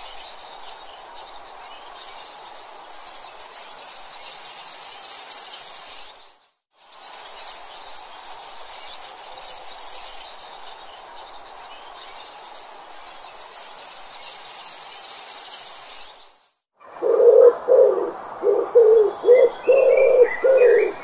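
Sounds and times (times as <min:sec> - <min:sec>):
high-pitched insect chorus: 0:00.0 - 0:21.0.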